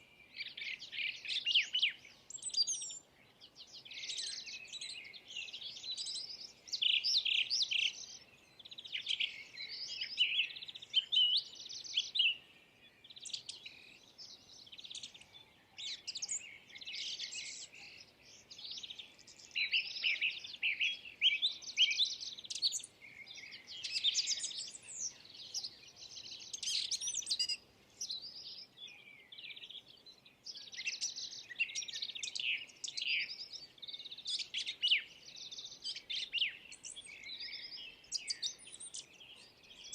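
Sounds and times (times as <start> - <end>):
birds chirping: 0.0 - 39.9.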